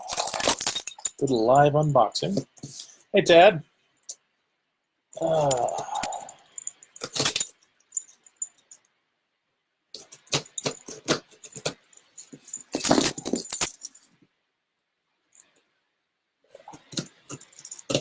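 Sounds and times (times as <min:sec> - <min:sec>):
light jingling: 0:00.0 - 0:02.9, 0:05.2 - 0:08.8, 0:10.0 - 0:14.2, 0:16.7 - 0:18.0.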